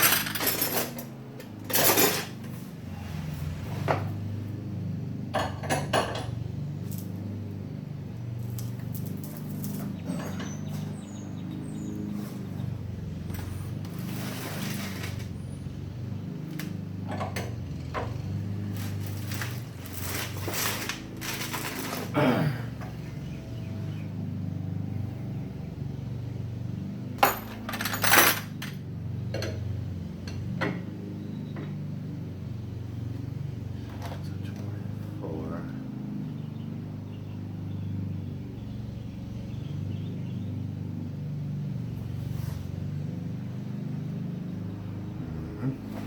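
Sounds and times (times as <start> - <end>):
metal tools clinking: 0.0 - 2.6, 8.4 - 11.0, 13.3 - 15.4, 16.6 - 23.0, 27.2 - 29.6.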